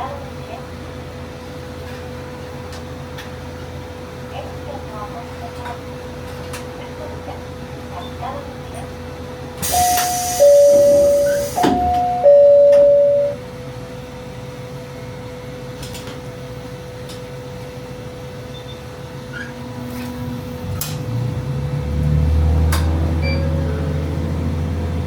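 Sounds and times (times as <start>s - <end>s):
diesel railcar engine revving: 0.0s - 25.0s
air hiss: 9.6s - 11.8s
two-note train horn: 9.7s - 13.4s.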